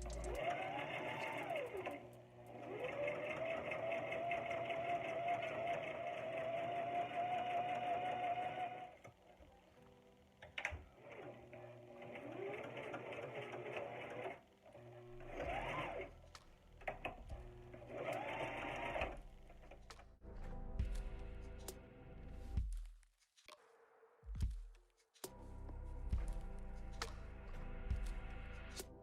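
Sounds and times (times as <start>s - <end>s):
electric sewing machine stitching: 0.0s - 9.1s, 11.0s - 19.8s.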